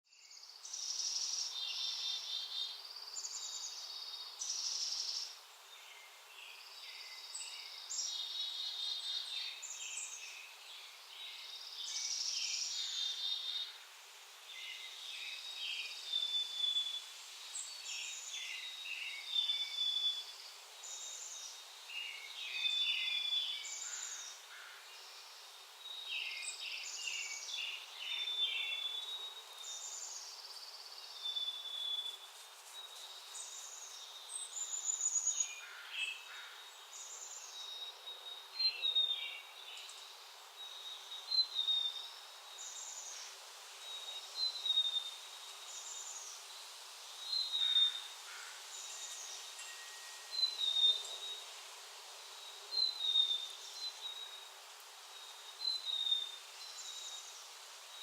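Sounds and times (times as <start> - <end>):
songbirds chirping and trilling: 0.1 - 58.0.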